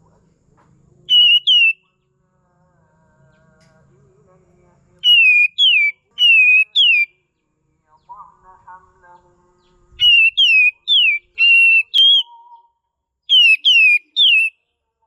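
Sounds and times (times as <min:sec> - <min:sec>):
bird calling in whistled notes: 0:01.1 - 0:01.9, 0:05.0 - 0:07.1, 0:10.0 - 0:14.6.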